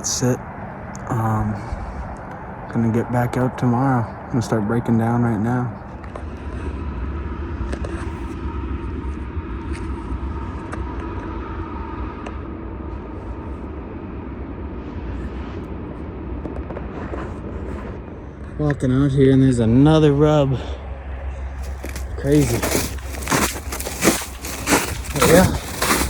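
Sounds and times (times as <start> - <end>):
low outdoor rumble: 0.0 - 26.0
gear clicks and knocks: 21.6 - 26.0.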